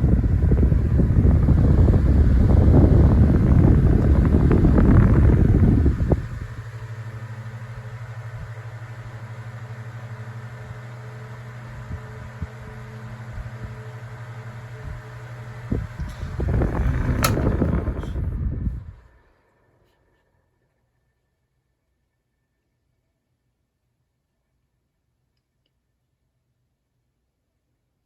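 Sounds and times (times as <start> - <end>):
fan airstream rushing: 0.0 - 19.4
fan motor humming: 0.0 - 20.2.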